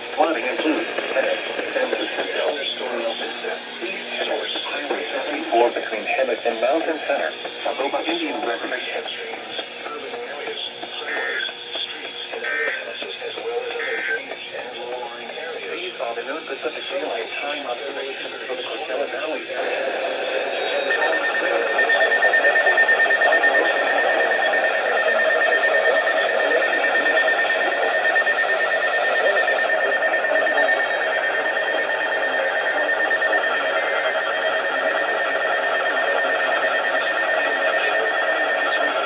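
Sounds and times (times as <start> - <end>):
harsh electronic alarm tone: 10.8 - 39.0.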